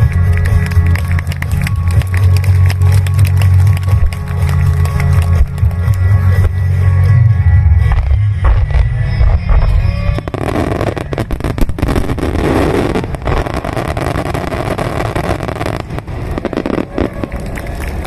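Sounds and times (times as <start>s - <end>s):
firework crackles: 0.0s - 6.6s, 7.9s - 18.0s
song: 0.0s - 16.8s
continuous rumble: 0.0s - 18.0s
fireworks bursting: 7.8s - 17.7s.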